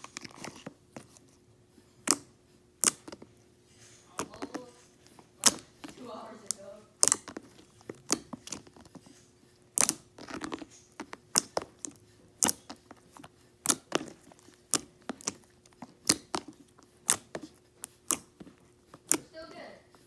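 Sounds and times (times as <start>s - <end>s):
slime popping and clicking: 2.0s - 3.2s, 5.4s - 8.8s, 9.7s - 19.3s.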